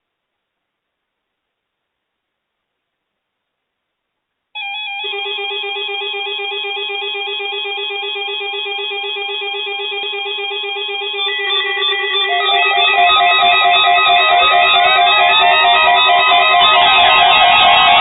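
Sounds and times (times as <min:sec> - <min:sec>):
weather alert radio alarms warbling: 0:04.6 - 0:18.0.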